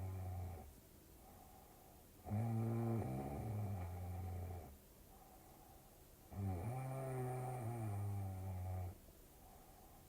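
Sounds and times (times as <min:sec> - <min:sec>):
person snoring: 0:02.3 - 0:04.7.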